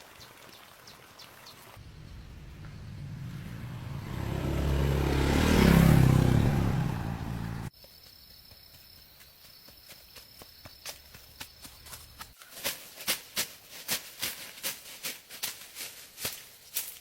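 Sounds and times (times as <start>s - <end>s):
vehicle engine passing by: 1.8s - 7.7s.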